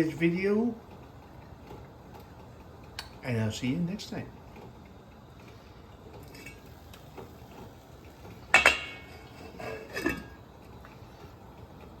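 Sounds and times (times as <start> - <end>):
metal cookware clanking: 6.2 - 6.7, 8.5 - 10.4.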